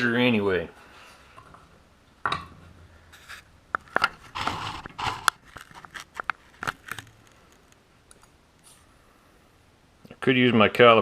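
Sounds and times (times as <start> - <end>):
rustling scrapes: 3.1 - 7.6.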